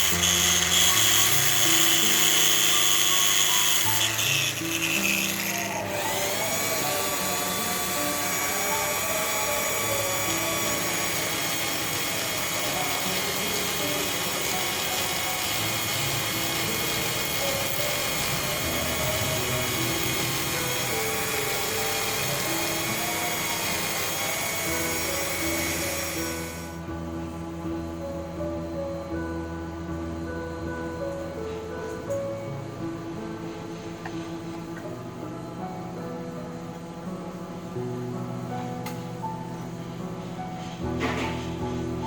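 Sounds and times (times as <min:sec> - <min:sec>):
electric power tool whining: 0:00.0 - 0:26.8
background music: 0:00.0 - 0:42.0.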